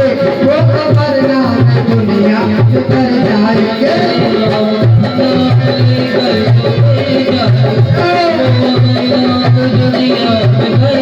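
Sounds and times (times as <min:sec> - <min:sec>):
steady drum beat: 0:00.0 - 0:11.0.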